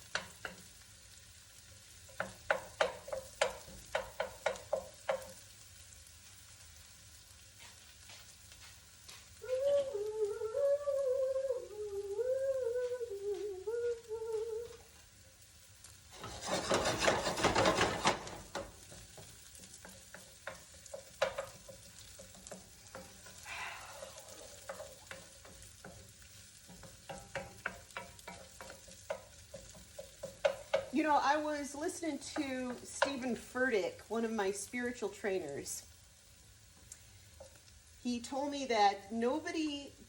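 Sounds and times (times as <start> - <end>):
spatula scraping and tapping: 0.0 - 0.8, 2.0 - 5.5, 16.1 - 23.4, 24.1 - 31.1, 32.2 - 33.4
onion sizzling in oil: 0.0 - 40.0.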